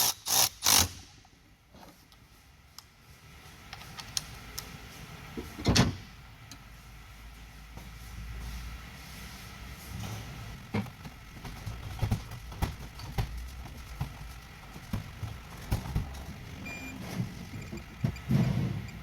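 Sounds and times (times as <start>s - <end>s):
low steady hum: 1.2s - 19.0s.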